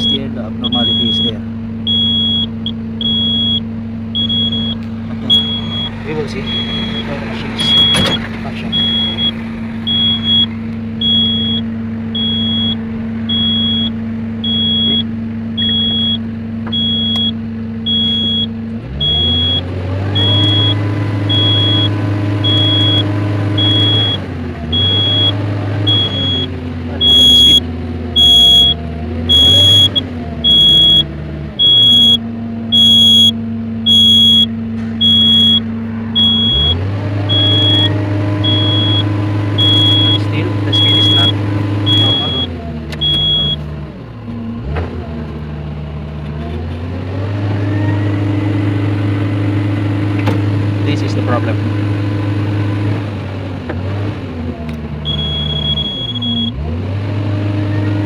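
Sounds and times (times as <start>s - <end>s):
high warning beep: 0.0s - 43.6s, 55.1s - 56.6s
loud pulsing beeping: 0.0s - 43.6s, 55.1s - 56.6s
diesel engine running: 0.0s - 58.0s.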